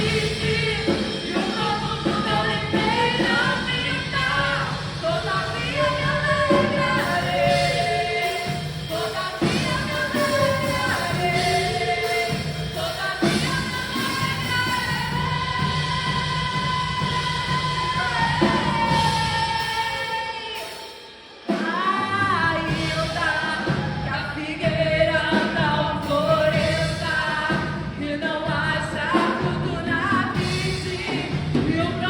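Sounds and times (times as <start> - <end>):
band playing: 0.0 - 24.3
woman singing gospel: 0.0 - 32.0.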